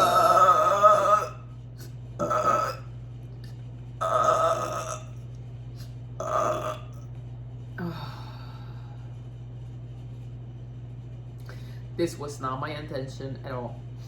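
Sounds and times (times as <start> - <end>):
woman burping: 0.0 - 1.5, 2.2 - 2.9, 4.0 - 5.2, 6.2 - 7.0
steady low hum: 0.0 - 14.0.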